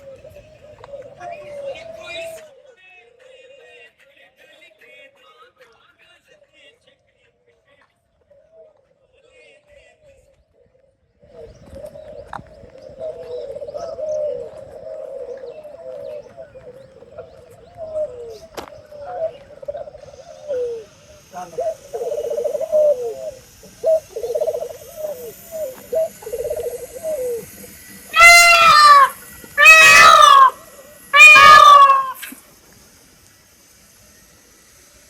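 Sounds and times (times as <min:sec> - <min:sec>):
low repeated cooing: 0:00.0 - 0:02.5, 0:11.2 - 0:32.4
loud drawn-out animal calls: 0:11.4 - 0:32.6.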